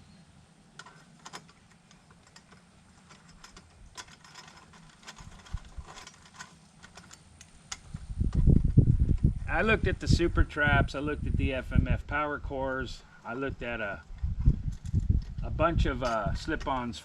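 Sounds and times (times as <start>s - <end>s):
small metal parts clicking and clinking: 0.8s - 8.0s, 14.0s - 16.8s.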